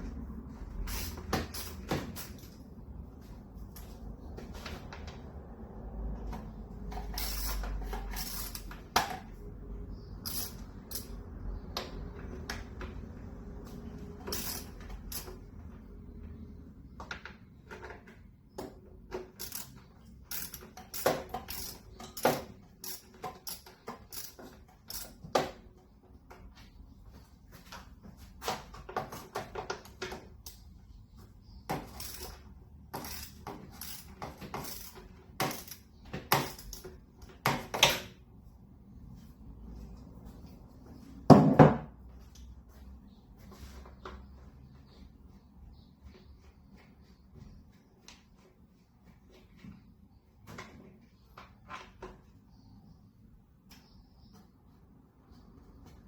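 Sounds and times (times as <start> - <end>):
socket wrench clicking on metal: 10.2 - 11.2, 14.2 - 15.4, 19.3 - 25.2.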